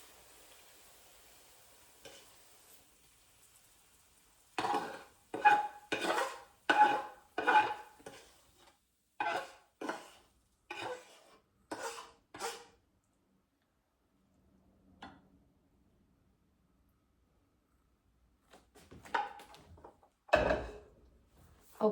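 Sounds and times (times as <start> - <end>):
utensil scraping and clanking on pan: 2.0 - 2.4, 4.6 - 12.8, 19.0 - 19.6, 20.3 - 20.9.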